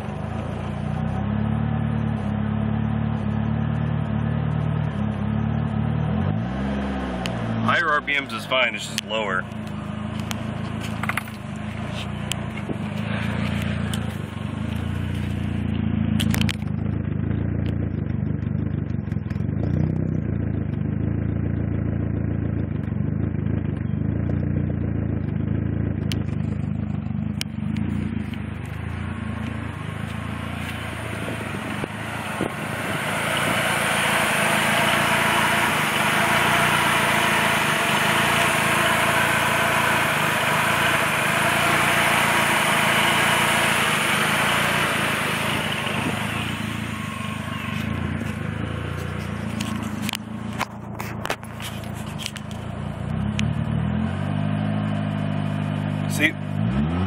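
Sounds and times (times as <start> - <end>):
car engine idling roughly: 7.7 - 53.7
engine revving higher: 27.6 - 50.9, 52.3 - 57.0.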